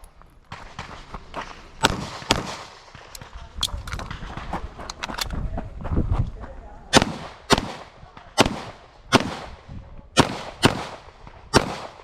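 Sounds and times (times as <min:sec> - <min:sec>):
pistol shots: 0:01.8 - 0:03.3, 0:06.9 - 0:09.6, 0:10.2 - 0:12.0.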